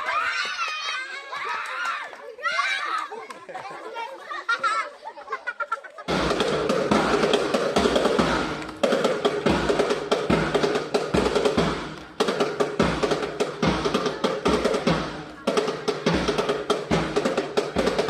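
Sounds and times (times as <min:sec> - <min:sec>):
drums and percussion: 0:06.1 - 0:18.0.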